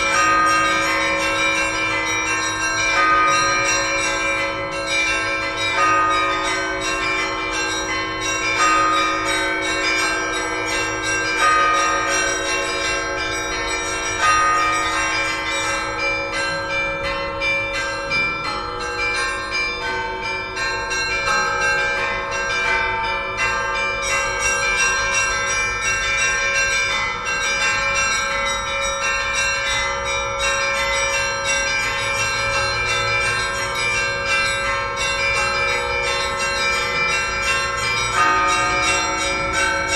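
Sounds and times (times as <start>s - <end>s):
church bells pealing: 0.0s - 39.9s.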